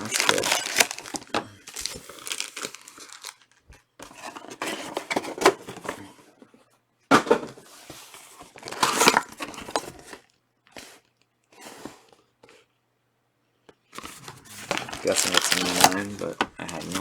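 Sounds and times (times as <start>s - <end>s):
cards being handled: 0.0s - 3.6s, 14.0s - 17.0s
card pack wrapper crinkling: 0.0s - 3.7s, 14.0s - 17.0s.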